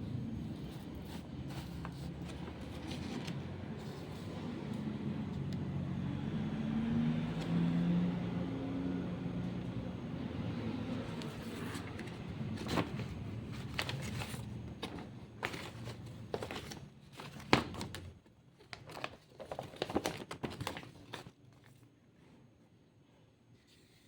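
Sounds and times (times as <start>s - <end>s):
packaging crinkling: 12.0s - 21.8s.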